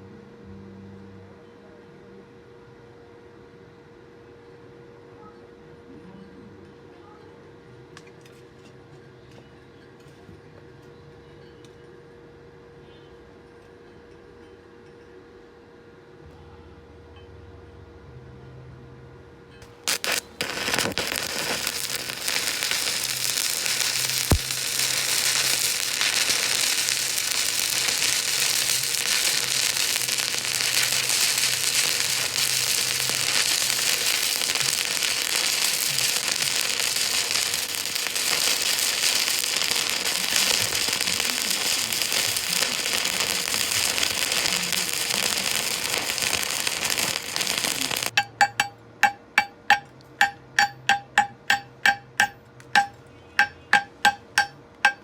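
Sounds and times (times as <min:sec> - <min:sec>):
welding arc crackling: 0:19.6 - 0:55.0
sharp metallic taps: 0:48.1 - 0:55.0.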